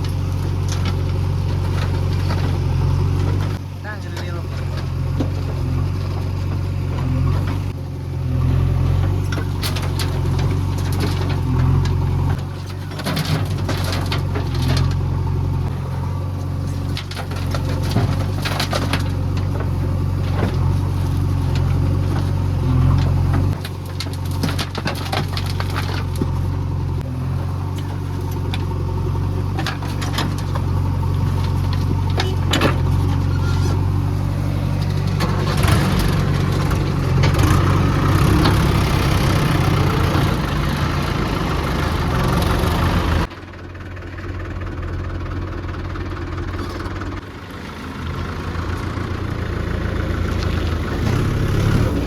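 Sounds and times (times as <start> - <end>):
diesel engine under load: 0.0 - 52.0
sharp knocks and clatters: 16.7 - 26.6, 34.7 - 43.3.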